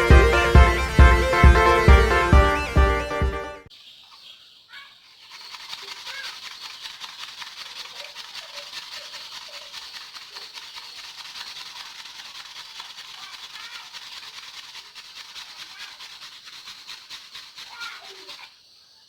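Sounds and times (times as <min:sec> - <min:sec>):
faint animal calls: 0:03.8 - 0:11.8, 0:12.6 - 0:19.0.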